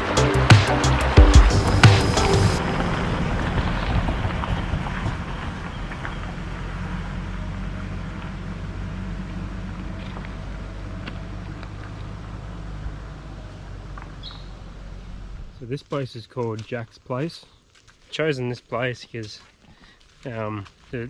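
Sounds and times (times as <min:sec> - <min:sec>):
road noise: 0:00.0 - 0:15.6
vehicle running: 0:00.0 - 0:15.6.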